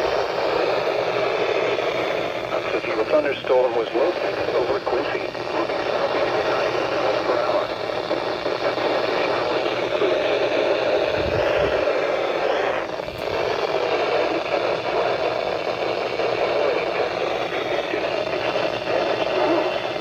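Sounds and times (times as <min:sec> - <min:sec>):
radio static hiss: 0:00.0 - 0:20.0.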